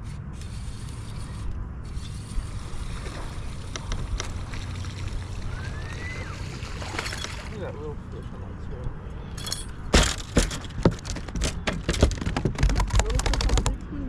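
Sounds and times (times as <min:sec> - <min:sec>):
fishing boat rumble and hiss: 0:00.0 - 0:10.2
short rising whistle: 0:05.5 - 0:06.5.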